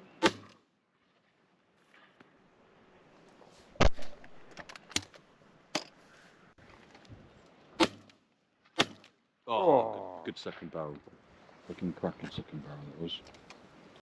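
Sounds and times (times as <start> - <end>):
shotgun shot: 0.2 - 0.5, 8.8 - 9.1.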